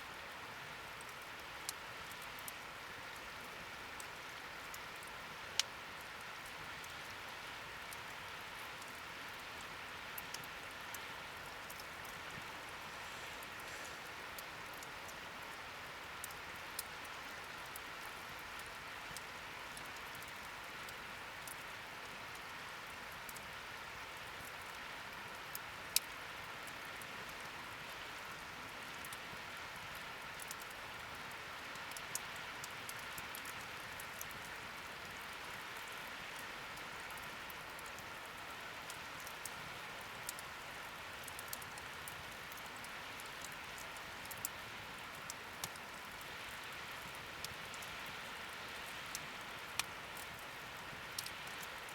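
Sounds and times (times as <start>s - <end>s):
wood fire crackling and popping: 37.1s - 47.8s, 48.9s - 51.9s.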